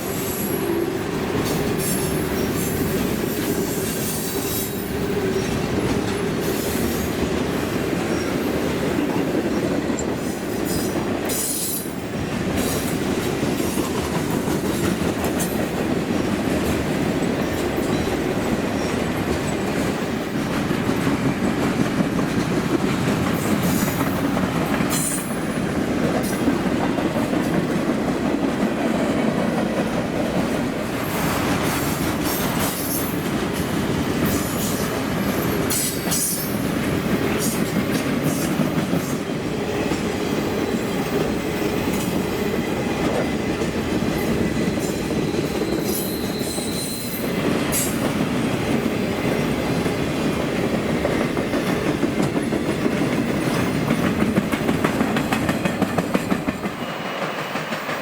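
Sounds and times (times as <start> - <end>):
freight train wheels rumbling: 0.0 - 58.0
high-pitched wheel squeals: 45.2 - 47.2.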